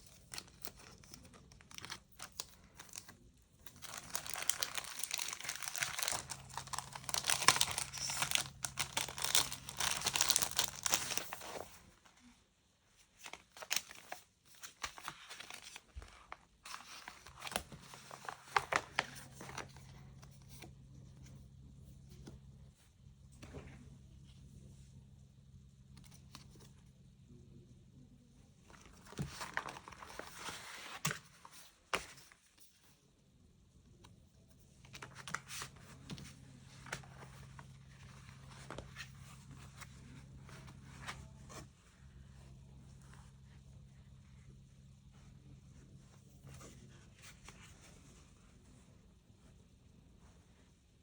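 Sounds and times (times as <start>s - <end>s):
packaging crinkling and tearing: 0.1s - 11.8s, 13.2s - 19.8s, 28.8s - 31.1s.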